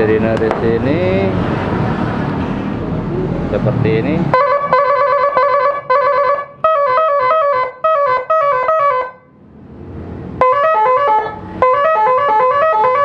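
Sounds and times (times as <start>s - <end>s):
motorcycle horn playing tune: 4.3s - 9.4s, 10.4s - 13.0s.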